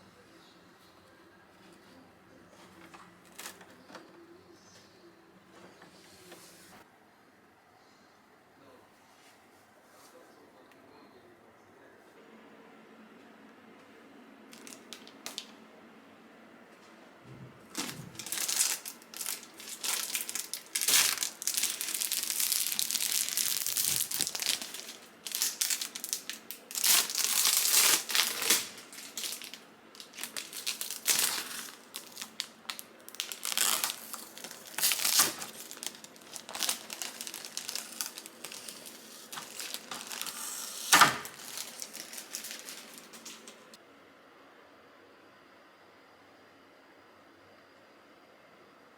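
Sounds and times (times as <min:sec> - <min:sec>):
packaging crinkling and rustling: 0:02.7 - 0:04.1, 0:14.5 - 0:15.6, 0:17.6 - 0:43.8
packaging tearing: 0:14.6 - 0:15.5, 0:17.7 - 0:43.7
sharp crackle: 0:18.2 - 0:43.6.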